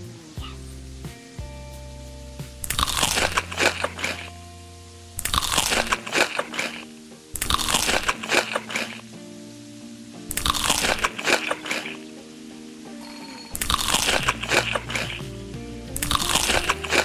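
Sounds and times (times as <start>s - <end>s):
background music: 0.0s - 17.0s
crunchy food being chewed: 2.6s - 4.4s, 5.2s - 9.0s, 10.3s - 12.0s, 13.6s - 15.3s, 16.0s - 17.0s.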